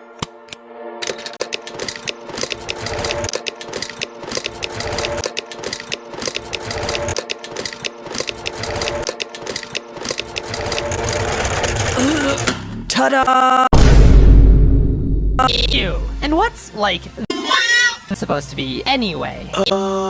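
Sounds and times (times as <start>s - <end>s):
rapid mechanical clattering: 1.0s - 12.6s.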